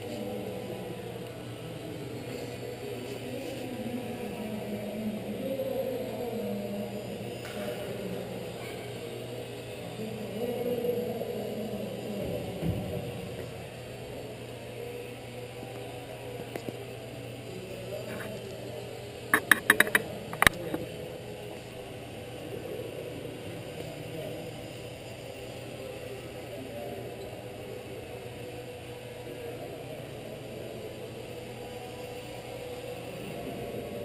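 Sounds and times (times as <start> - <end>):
background murmur of a hall: 0.0 - 34.0
faint steady hum: 0.0 - 34.0
sharp clicks: 19.3 - 20.6.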